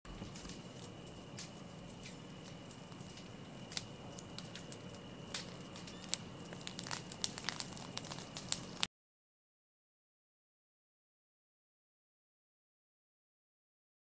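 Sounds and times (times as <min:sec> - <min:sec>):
faint steady hum: 0:00.1 - 0:08.9
fire crackling and popping: 0:00.1 - 0:08.9.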